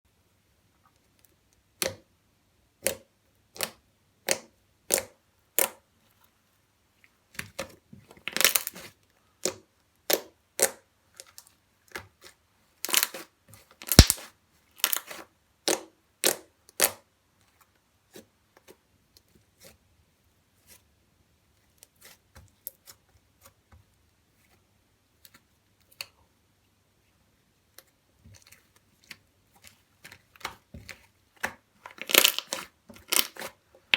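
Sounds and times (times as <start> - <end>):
slime squeezed with wet pops: 13.9 - 14.3.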